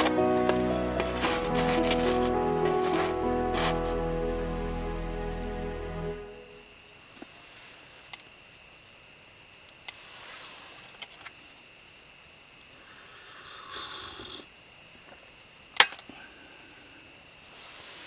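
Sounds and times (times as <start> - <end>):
faint steady high tone: 0.0 - 6.9.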